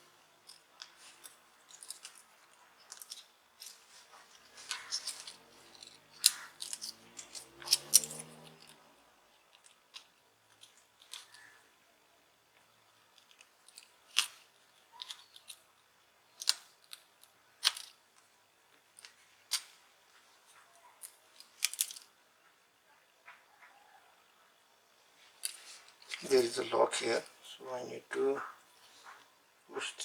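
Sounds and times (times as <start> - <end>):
small clicks and taps of tools: 2.8 - 8.8.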